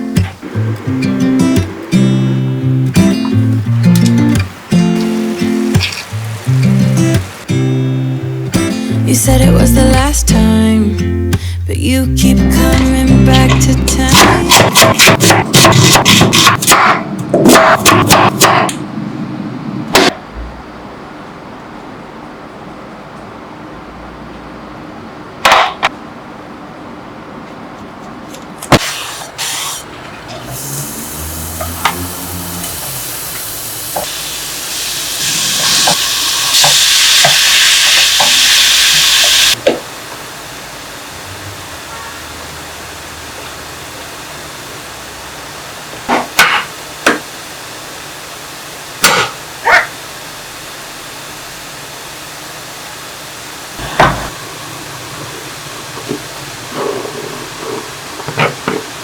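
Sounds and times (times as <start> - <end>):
food sizzling in a frying pan: 1.6 - 9.0, 30.4 - 59.0.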